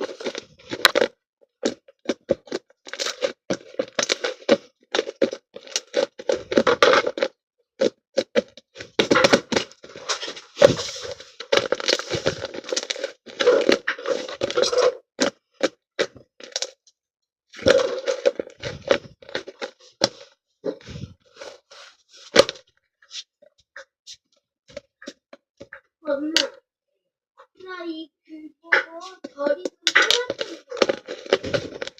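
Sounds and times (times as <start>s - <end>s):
slime crackling and popping: 0.0s - 16.8s, 29.8s - 31.9s.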